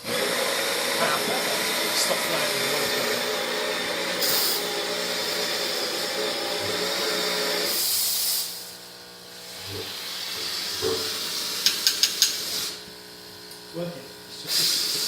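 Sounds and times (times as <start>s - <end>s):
espresso steam wand hissing: 0.0s - 15.0s.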